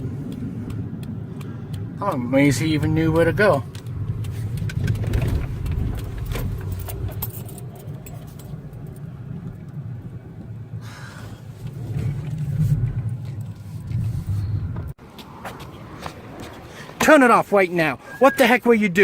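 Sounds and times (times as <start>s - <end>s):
car engine and road rumble: 0.0s - 19.0s
light rattling and clicks: 0.2s - 9.8s.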